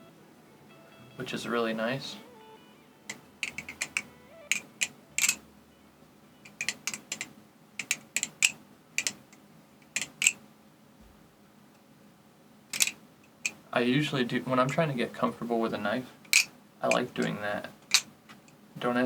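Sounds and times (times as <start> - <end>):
butterfly knife metallic clicks: 3.4 - 5.4.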